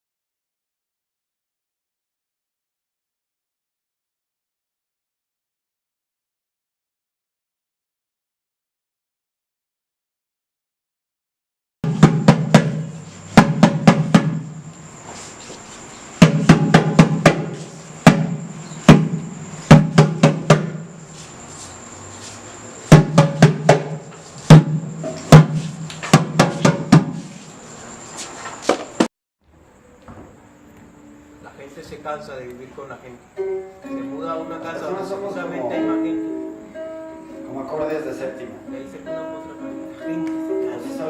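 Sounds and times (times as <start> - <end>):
strong low drum: 11.8 - 14.6
drum music: 11.8 - 14.7, 16.2 - 21.1, 22.9 - 27.4.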